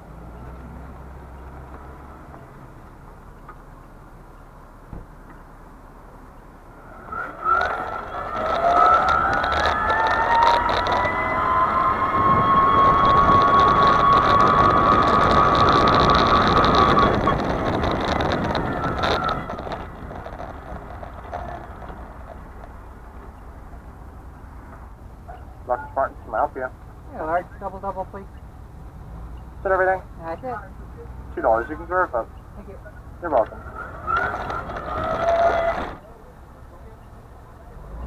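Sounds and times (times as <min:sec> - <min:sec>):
wheels rolling: 0:06.7 - 0:28.0, 0:31.2 - 0:36.8
electric motor whining: 0:07.2 - 0:22.0.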